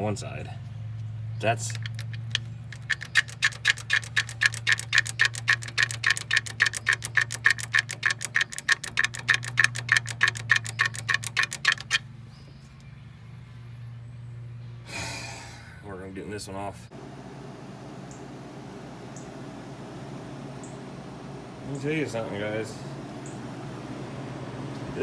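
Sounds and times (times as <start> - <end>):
steady low hum: 0.0 - 25.0
ratchet wrench clicking: 1.6 - 12.0.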